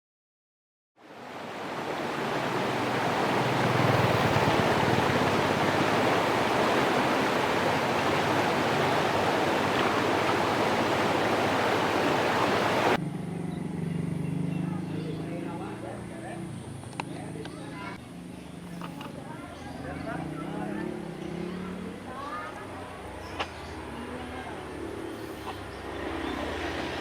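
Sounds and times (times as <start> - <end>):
steady rushing noise: 1.1 - 13.0.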